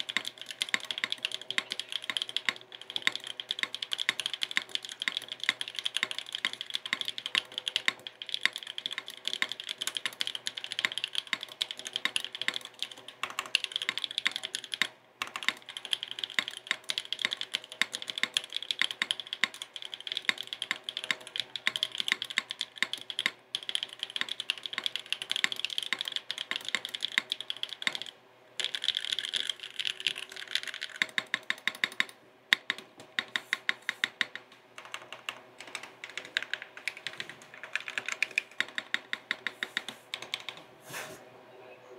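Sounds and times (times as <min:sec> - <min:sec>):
fast typing on mechanical keyboard: 0:00.0 - 0:40.6.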